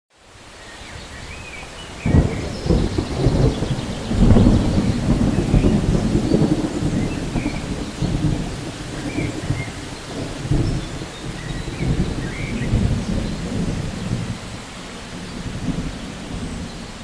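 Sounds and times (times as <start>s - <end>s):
rain hissing: 0.1s - 17.0s
thunder rumbling: 1.1s - 17.0s.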